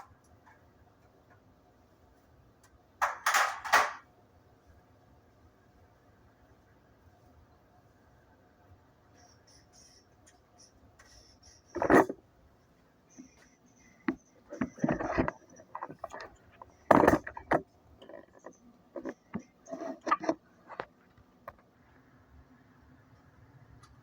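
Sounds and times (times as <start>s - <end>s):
household objects knocking and clattering: 14.1s - 20.9s.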